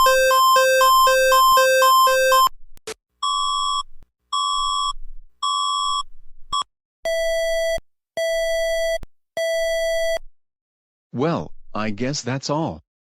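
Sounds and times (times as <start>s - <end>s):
electronic alarm beeps: 0.0s - 2.5s.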